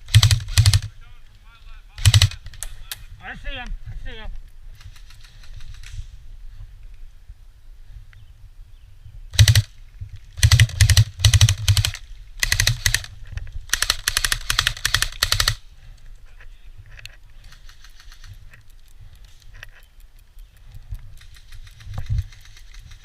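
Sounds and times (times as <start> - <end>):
airsoft gun firing bursts: 0.0 - 0.9, 2.0 - 2.5, 9.4 - 9.7, 10.4 - 13.1, 13.7 - 15.6, 21.2 - 23.0.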